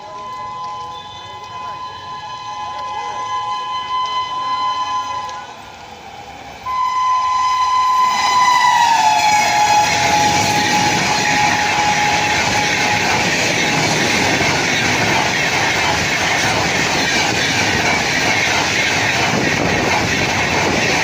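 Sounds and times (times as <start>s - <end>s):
locomotive horn blast: 0.0s - 5.6s, 6.6s - 13.3s
train wheels rushing on rail: 0.0s - 21.0s.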